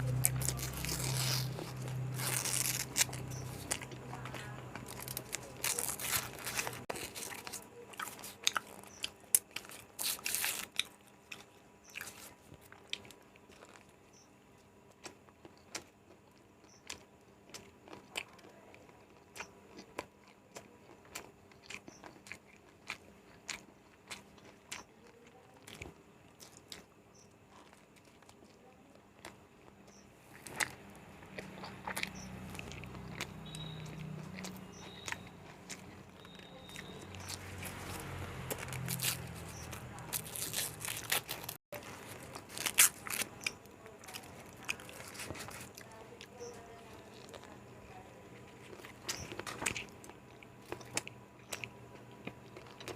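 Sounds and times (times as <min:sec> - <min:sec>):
crunchy bites: 0:00.0 - 0:14.3, 0:14.9 - 0:52.9
chewing with clicks: 0:00.0 - 0:52.9.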